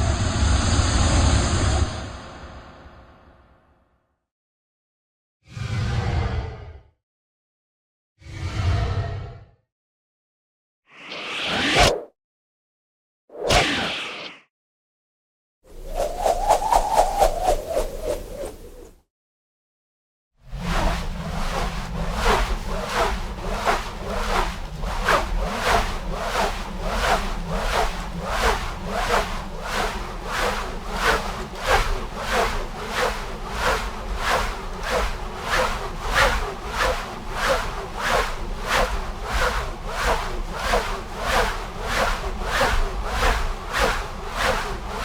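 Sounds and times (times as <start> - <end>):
rope whooshing: 15.7 - 18.9, 20.6 - 45.0.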